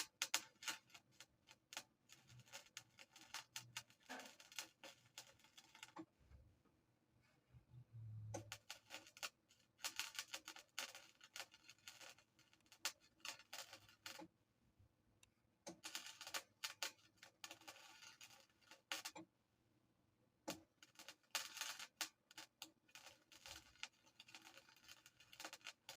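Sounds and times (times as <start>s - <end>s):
welding arc crackling: 0.0s - 6.0s, 8.3s - 14.3s, 15.7s - 19.2s, 20.5s - 26.0s.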